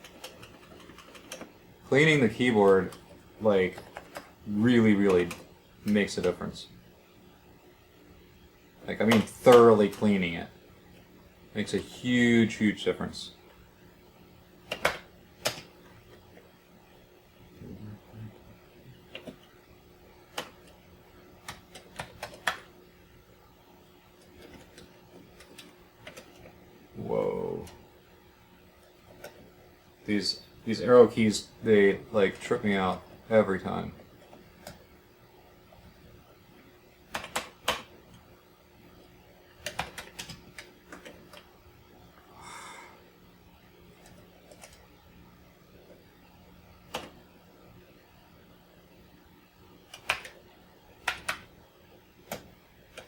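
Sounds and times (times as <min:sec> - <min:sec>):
keyboard keys clicking: 0:00.0 - 0:01.6, 0:21.4 - 0:22.7, 0:37.1 - 0:37.9, 0:39.6 - 0:41.5, 0:44.0 - 0:44.8, 0:49.9 - 0:50.4, 0:51.0 - 0:51.5
keyboard key clicks: 0:49.9 - 0:50.4, 0:51.0 - 0:51.5.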